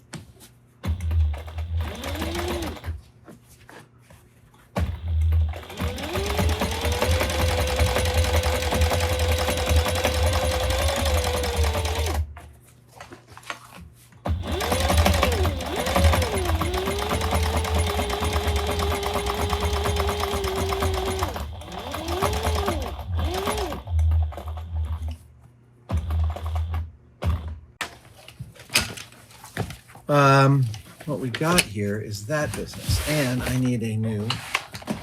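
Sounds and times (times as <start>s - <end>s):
sewing machine stitching: 0.9s - 3.0s, 4.8s - 12.3s, 14.3s - 25.1s, 25.9s - 26.8s.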